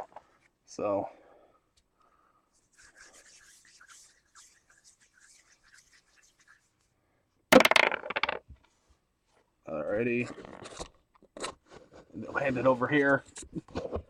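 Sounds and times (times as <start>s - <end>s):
die clattering on hard surface: 7.5s - 8.5s
die rattling in hand: 7.5s - 8.5s.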